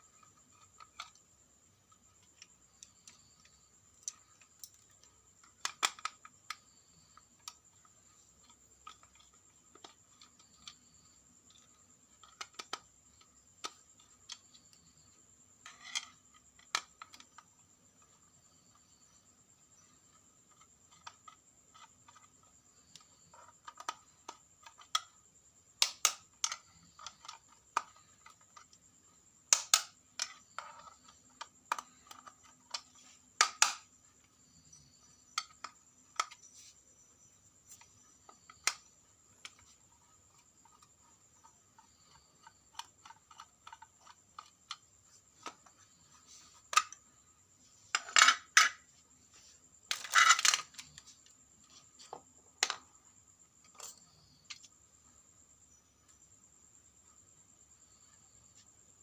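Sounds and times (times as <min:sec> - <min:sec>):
small hard objects clicking: 0:00.0 - 0:17.6, 0:19.7 - 0:28.8, 0:29.4 - 0:36.7, 0:49.9 - 0:51.4.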